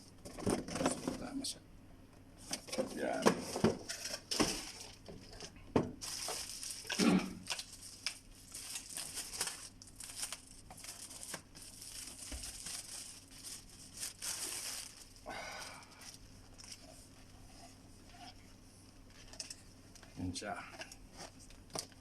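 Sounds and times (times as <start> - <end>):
plastic packaging crinkling: 6.0 - 16.8.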